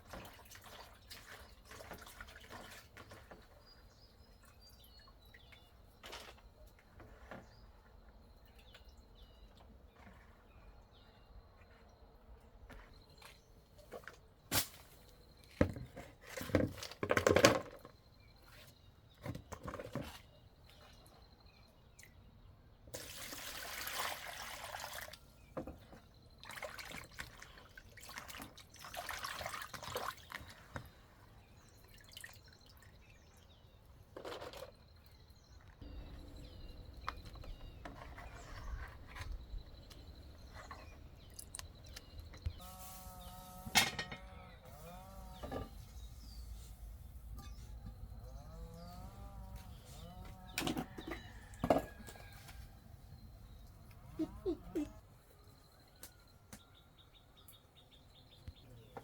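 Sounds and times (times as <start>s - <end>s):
water pouring and splashing: 0.0s - 3.5s, 22.9s - 25.5s, 26.4s - 30.9s, 31.6s - 33.4s.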